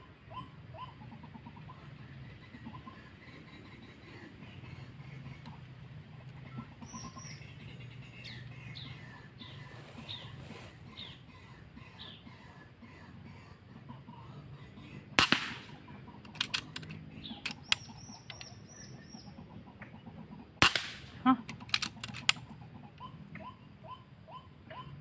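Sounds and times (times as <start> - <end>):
loud gunshots: 15.2 - 15.8, 20.6 - 21.2
small mechanical clicks: 16.2 - 18.5, 21.5 - 22.5.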